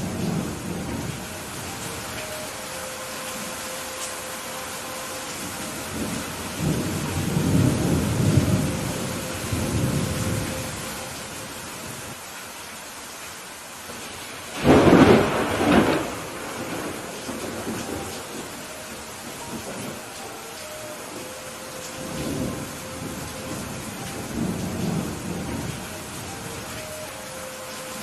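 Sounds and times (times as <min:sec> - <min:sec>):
steady rain: 0:00.0 - 0:28.0
rolling thunder rumble: 0:05.4 - 0:12.1, 0:14.0 - 0:20.2, 0:21.2 - 0:26.9
sharp thunderclap: 0:14.6 - 0:18.0.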